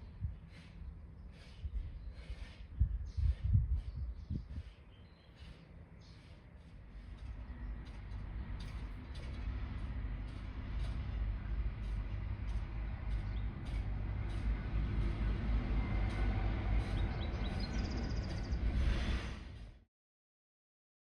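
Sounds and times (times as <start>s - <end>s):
steady low rumble: 7.0s - 19.8s
bird chirps: 16.9s - 18.6s.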